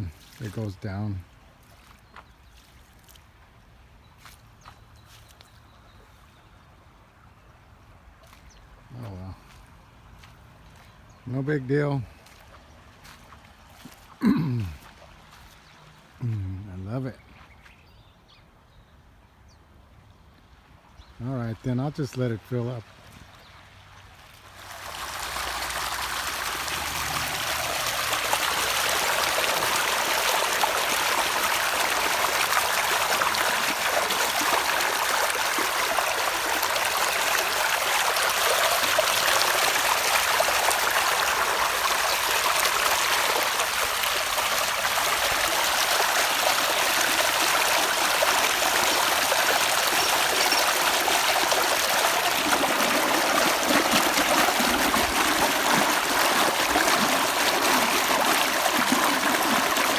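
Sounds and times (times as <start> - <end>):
water rushing into a yard: 0.0 - 1.9, 23.7 - 59.9.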